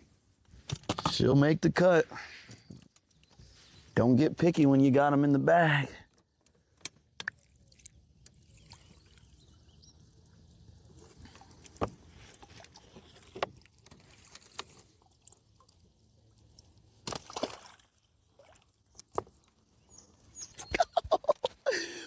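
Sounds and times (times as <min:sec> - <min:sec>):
water sloshing around boat: 0:06.2 - 0:20.4.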